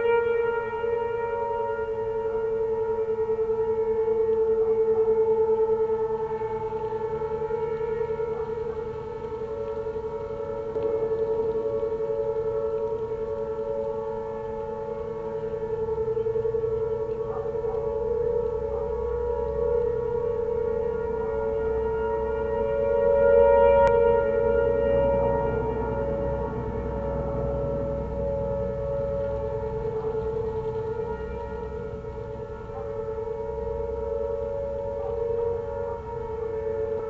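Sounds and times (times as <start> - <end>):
distant warning sirens: 0.0 - 37.0.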